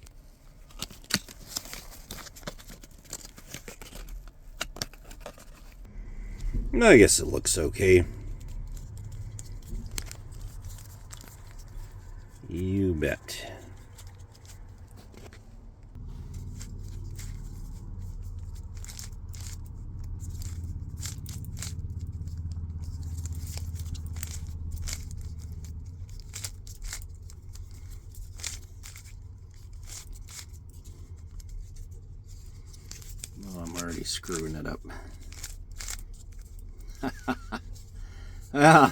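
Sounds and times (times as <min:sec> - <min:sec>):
low steady hum: 0:00.0 - 0:38.9
plastic puzzle cube clicking: 0:17.1 - 0:21.9.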